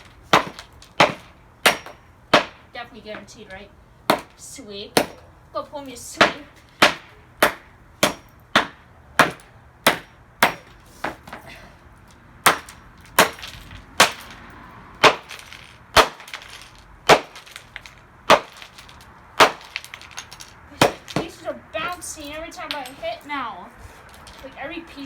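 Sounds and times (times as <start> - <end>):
hammer striking plastic: 15.0 - 20.2
plastic pieces clattering: 15.2 - 21.2.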